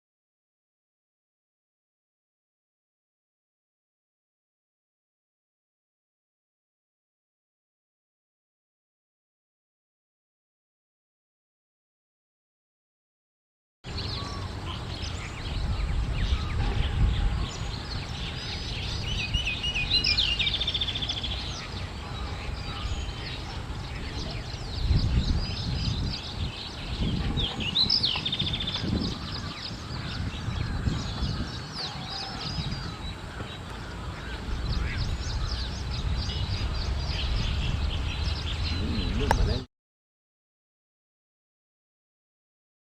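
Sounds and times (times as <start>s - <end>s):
bird song phrase: 13.9s - 39.7s
small birds chirping: 13.9s - 39.7s.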